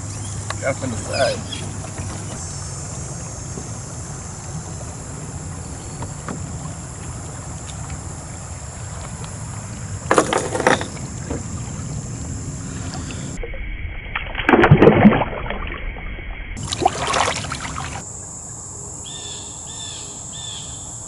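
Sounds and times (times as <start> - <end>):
high insect drone: 0.0 - 13.8, 16.3 - 21.0
wind rumbling on microphone: 0.0 - 18.0
rattle of knocks: 10.1 - 11.5.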